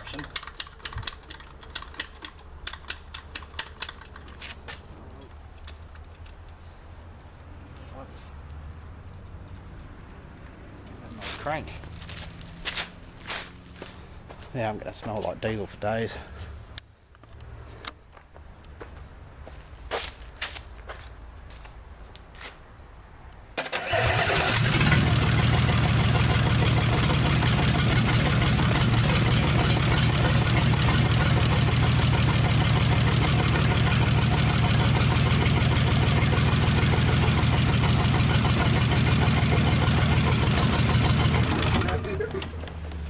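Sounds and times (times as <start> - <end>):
diesel engine starting and running: 23.6 - 43.0.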